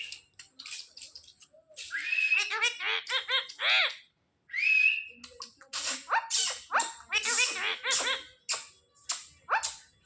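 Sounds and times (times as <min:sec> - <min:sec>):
parrot chattering calls: 0:02.3 - 0:04.1, 0:05.7 - 0:08.7.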